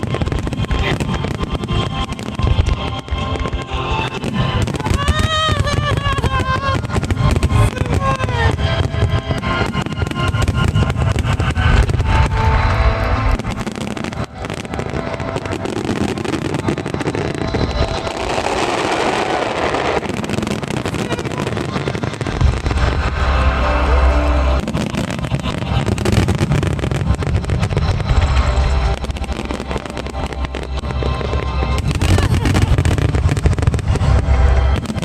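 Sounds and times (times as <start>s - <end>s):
fireworks booming: 0.0s - 35.0s
music: 0.0s - 35.0s.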